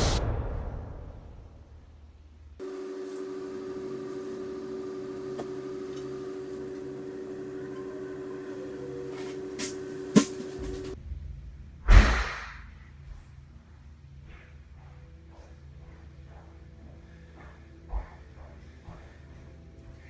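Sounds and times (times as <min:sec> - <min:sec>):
steady low hum: 0:02.6 - 0:11.0.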